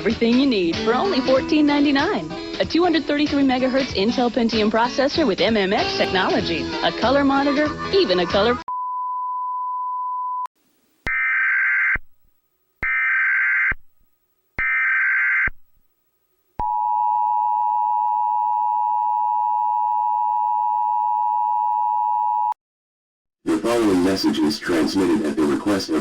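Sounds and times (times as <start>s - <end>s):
harsh buzzing data bursts: 14.6s - 15.6s.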